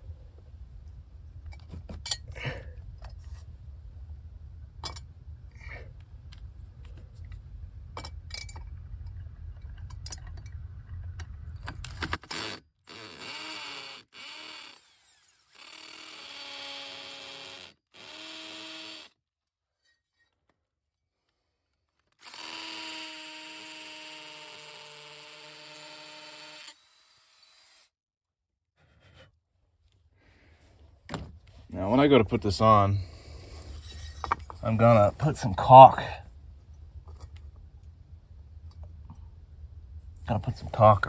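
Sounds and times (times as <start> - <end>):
low rumble: 0.0 - 12.0, 31.4 - 41.0
power drill whining: 11.8 - 19.2, 22.1 - 28.0.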